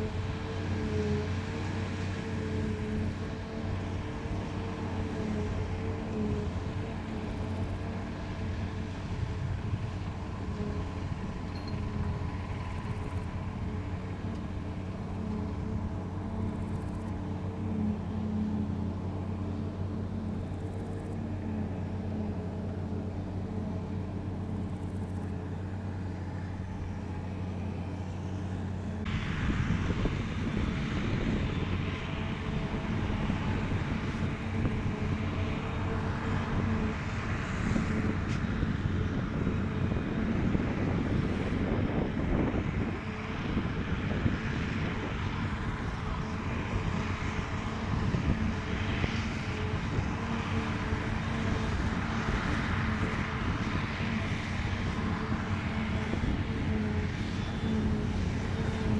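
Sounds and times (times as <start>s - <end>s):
diesel machinery engine hum: 0.0s - 58.9s
rough mechanical noise: 0.0s - 58.9s.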